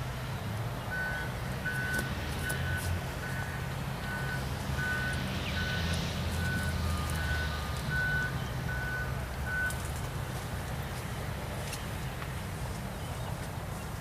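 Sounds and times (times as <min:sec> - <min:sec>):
diesel engine rumble: 0:00.0 - 0:14.0
reversing alarm beeping: 0:00.9 - 0:10.1.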